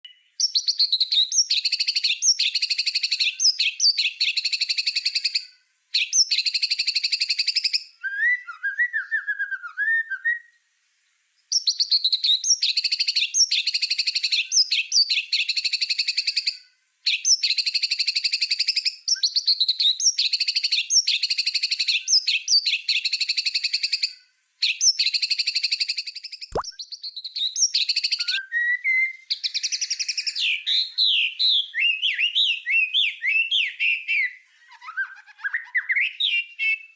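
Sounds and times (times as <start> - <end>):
bird twittering softly: 11.4 - 36.9
bird singing harsh repeated notes: 26.5 - 28.4.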